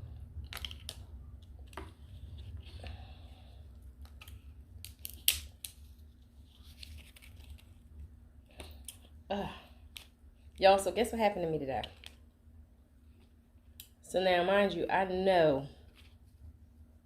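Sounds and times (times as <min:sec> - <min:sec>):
steady low hum: 0:00.0 - 0:17.0
crab shells cracking: 0:04.2 - 0:05.8.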